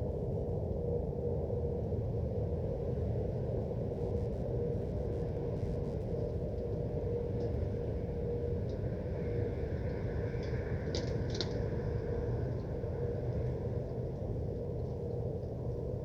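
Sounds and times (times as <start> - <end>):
industrial low rumble: 0.0 - 11.6
mid-pitched hum: 2.1 - 8.6.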